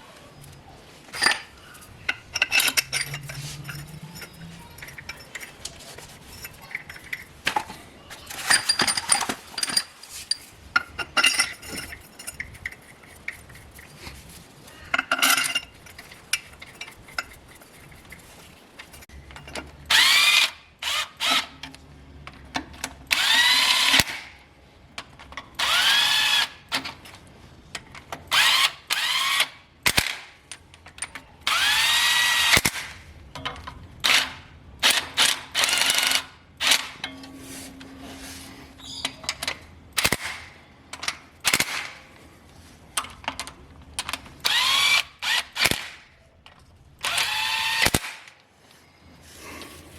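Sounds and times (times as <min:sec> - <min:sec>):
metal tools clinking: 0:00.4 - 0:19.7, 0:35.2 - 0:41.3
power drill whirring: 0:23.2 - 0:24.1, 0:31.5 - 0:32.6, 0:44.4 - 0:45.9, 0:47.0 - 0:48.0.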